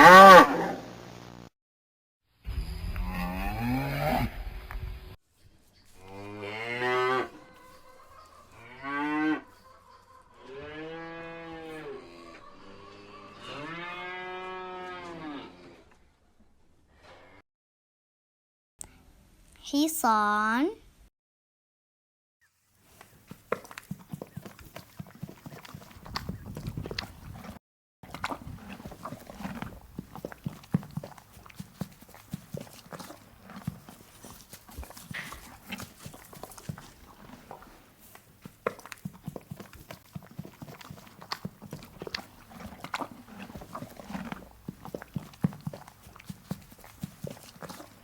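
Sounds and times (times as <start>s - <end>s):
horse hooves knocking: 23.3s - 48.0s.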